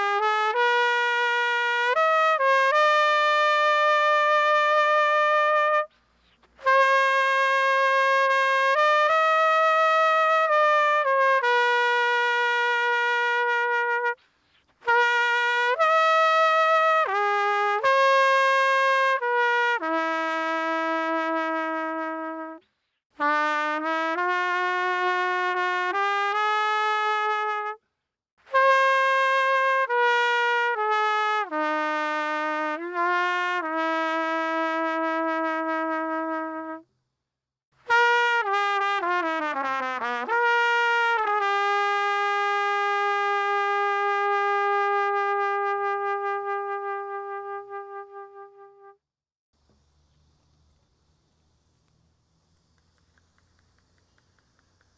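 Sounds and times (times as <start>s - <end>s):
solo trumpet playing slow melody: 0.0s - 27.8s, 28.5s - 36.9s, 37.8s - 49.1s.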